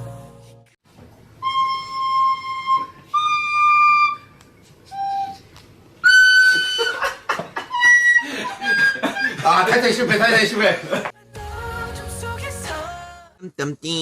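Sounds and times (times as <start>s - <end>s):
flute-like held notes: 1.4s - 7.0s.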